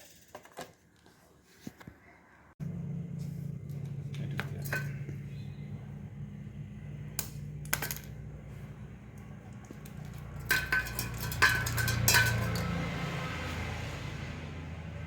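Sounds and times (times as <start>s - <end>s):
low hum: 2.6s - 15.0s
metal tools clinking: 3.7s - 5.2s, 9.6s - 13.1s.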